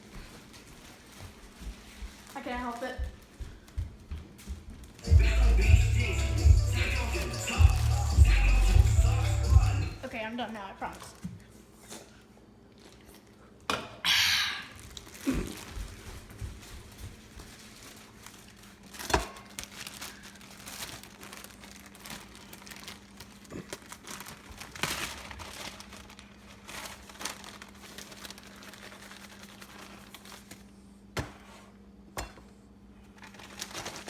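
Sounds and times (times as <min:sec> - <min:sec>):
plastic bag crinkling: 0:12.6 - 0:13.6, 0:14.7 - 0:30.8, 0:33.0 - 0:34.0.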